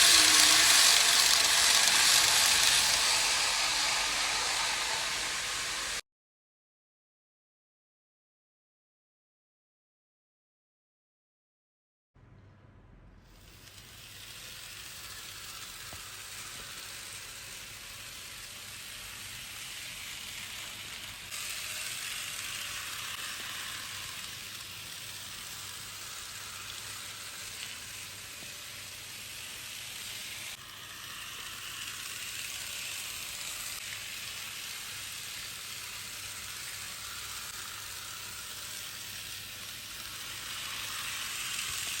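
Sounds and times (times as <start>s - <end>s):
model train running on track: 0.0s - 6.0s, 13.4s - 42.0s.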